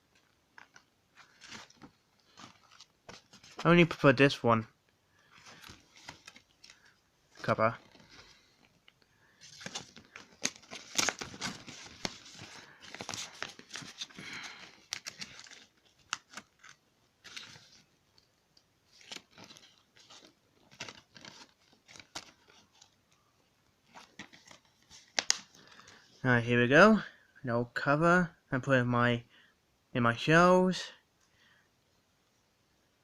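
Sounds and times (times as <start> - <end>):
paper sleeve rustling and crinkling: 0.6 - 3.9, 5.2 - 8.7, 9.4 - 17.9, 18.9 - 23.0, 23.8 - 26.0.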